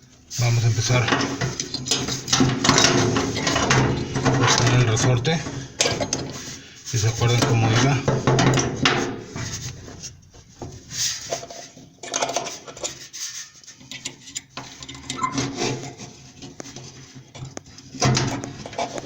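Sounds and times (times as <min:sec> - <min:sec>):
metal parts scraping and clicking: 0:00.3 - 0:10.2.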